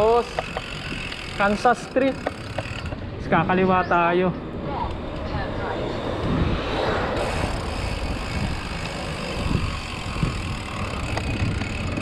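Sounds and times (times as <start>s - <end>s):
bicycle tyre noise: 0.0s - 3.1s, 5.8s - 12.0s
wind: 0.0s - 12.0s.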